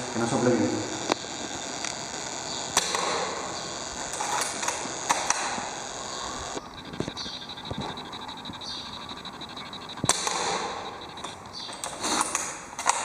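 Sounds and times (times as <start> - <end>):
airsoft gun firing pops: 2.8 - 3.4, 10.0 - 10.9.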